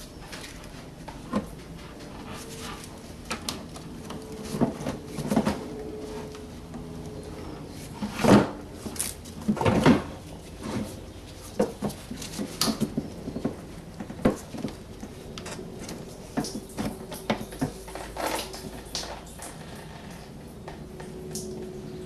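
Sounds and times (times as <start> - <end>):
hard plastic knocking and scraping: 8.0 - 19.6.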